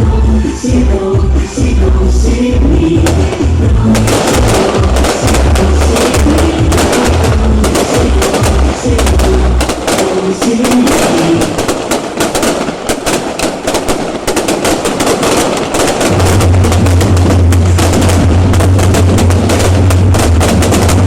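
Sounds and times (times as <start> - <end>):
music: 0.0 - 11.6, 15.8 - 21.0
fireworks crackling: 1.5 - 21.0.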